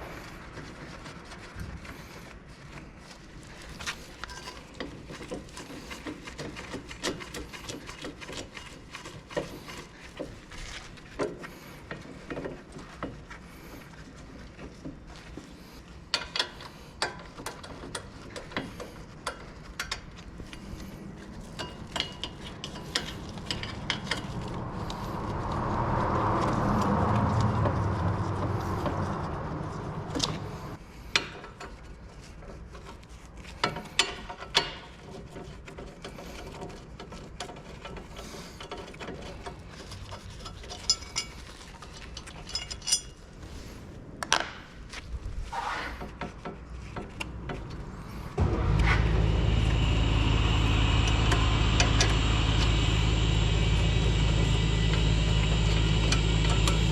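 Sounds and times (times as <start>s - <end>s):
broad swell of noise: 22.5s - 30.8s, 47.8s - 56.9s.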